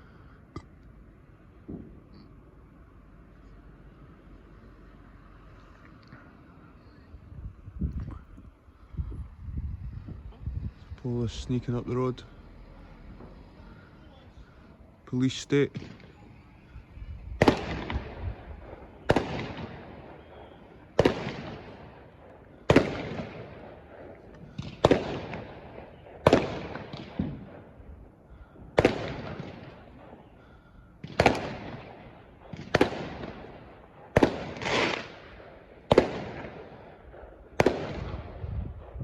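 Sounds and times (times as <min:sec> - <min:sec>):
fireworks banging: 0:01.2 - 0:02.3, 0:09.2 - 0:39.0.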